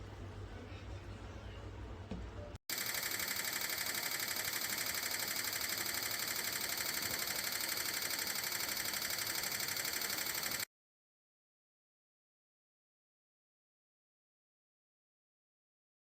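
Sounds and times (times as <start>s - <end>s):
air cooler whirring: 0.0s - 10.6s.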